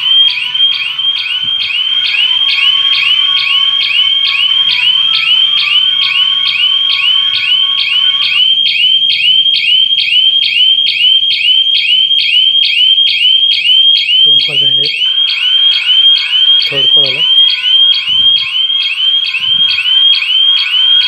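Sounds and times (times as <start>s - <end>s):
alarm siren rising chirp: 0.0s - 21.0s.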